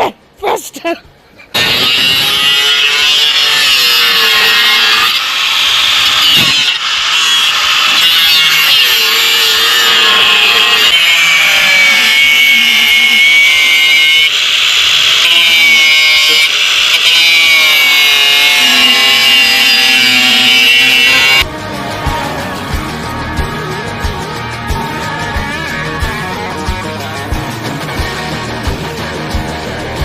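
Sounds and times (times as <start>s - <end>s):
angle grinder on steel: 1.6s - 21.5s.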